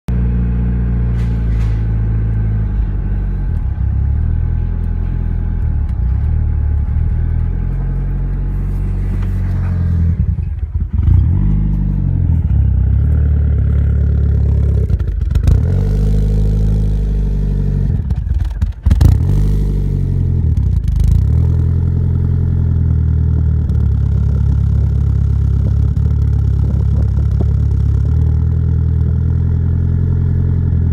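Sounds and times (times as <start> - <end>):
car engine idling roughly: 11.8 - 16.1, 17.0 - 19.4, 22.1 - 29.9.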